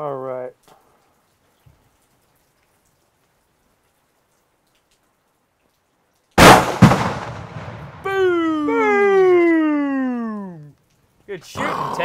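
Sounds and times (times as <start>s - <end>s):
loud rifle shot: 6.4s - 8.0s
exploding target boom: 6.4s - 8.2s.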